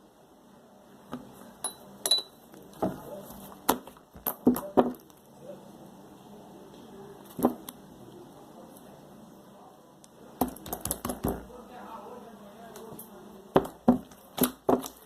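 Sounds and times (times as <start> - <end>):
slime clicking and popping: 10.4 - 11.4.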